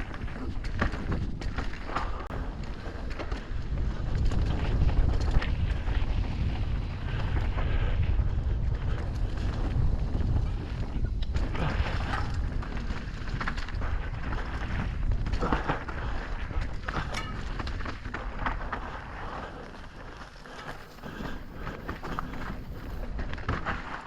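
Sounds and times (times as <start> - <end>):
wind buffeting microphone: 0.0 - 24.0
tyres crunching over dirt: 9.3 - 24.0.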